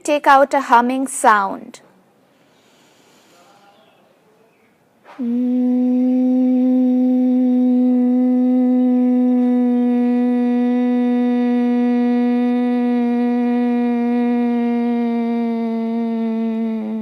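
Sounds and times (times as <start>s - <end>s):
deep in-breath: 2.3s - 3.6s
woman humming one pitch: 5.1s - 17.0s.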